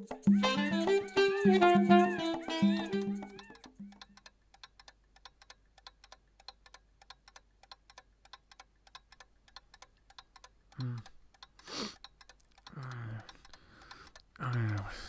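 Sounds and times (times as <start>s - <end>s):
clock ticking: 3.4s - 15.0s
low human vocal sound: 10.8s - 11.2s, 12.7s - 13.5s, 14.4s - 15.0s.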